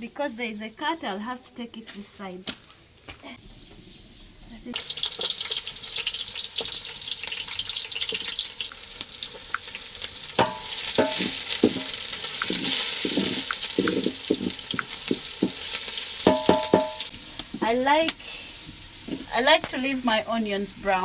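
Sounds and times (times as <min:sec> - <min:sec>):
onions sizzling in hot oil: 0:04.7 - 0:21.0
spoon stirring and knocking pan: 0:10.4 - 0:17.8.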